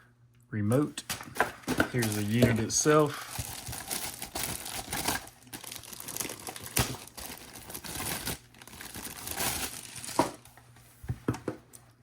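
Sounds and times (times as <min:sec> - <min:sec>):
plastic packaging crinkling: 0:01.3 - 0:10.6.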